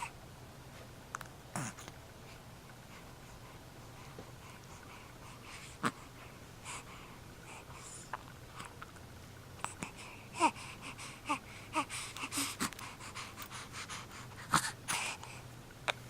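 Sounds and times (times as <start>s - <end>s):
snuffling breaths through nose: 9.6s - 15.4s.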